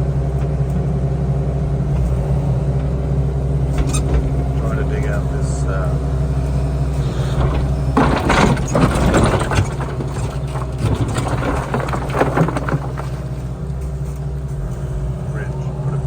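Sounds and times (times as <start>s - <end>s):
engine running: 0.0s - 16.0s
scraping and clattering: 6.9s - 14.9s.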